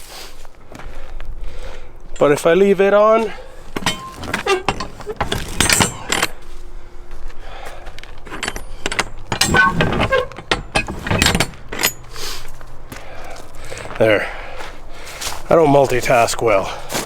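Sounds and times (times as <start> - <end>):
metal parts clinking and rattling: 3.3 - 6.6, 7.9 - 12.6.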